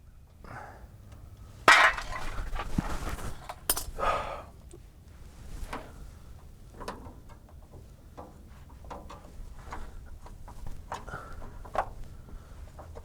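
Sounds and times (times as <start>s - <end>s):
hose fittings clattering: 1.6s - 4.0s, 5.5s - 13.0s
scraping and rustling: 1.6s - 4.0s.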